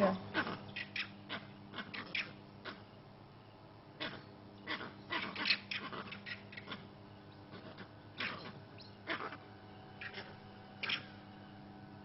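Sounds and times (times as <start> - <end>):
steady low hum: 0.0 - 12.0
baby monkey distress squeals: 0.1 - 2.9, 4.0 - 6.9, 7.5 - 9.4, 10.0 - 11.2.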